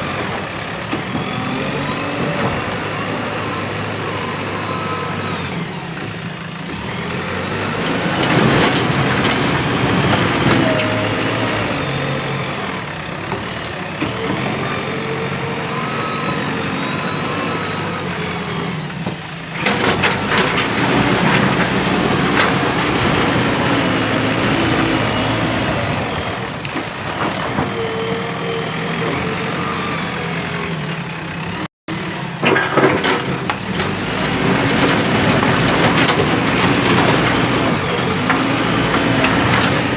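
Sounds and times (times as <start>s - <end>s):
diesel engine under load: 0.0s - 39.9s
clatter of knocks: 19.0s - 23.4s, 32.4s - 39.9s.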